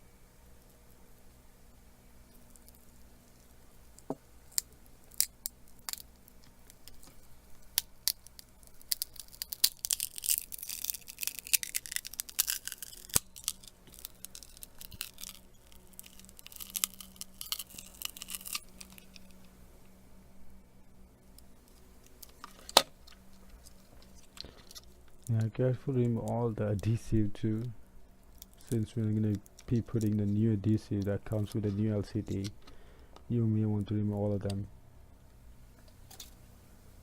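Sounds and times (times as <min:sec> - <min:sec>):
crackly scraping and tearing: 0:02.2 - 0:19.6, 0:21.3 - 0:32.8.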